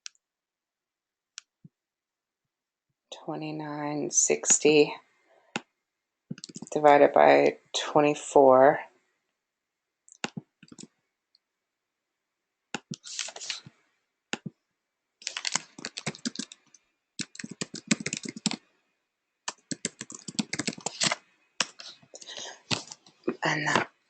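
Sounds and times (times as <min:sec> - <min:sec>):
computer keyboard typing: 0:06.3 - 0:06.7, 0:10.1 - 0:10.9, 0:15.2 - 0:16.6, 0:17.2 - 0:18.6, 0:19.5 - 0:23.0.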